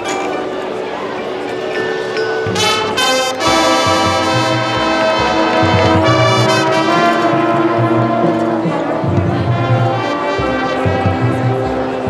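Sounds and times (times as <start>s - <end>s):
brass band playing chords: 2.4s - 12.0s.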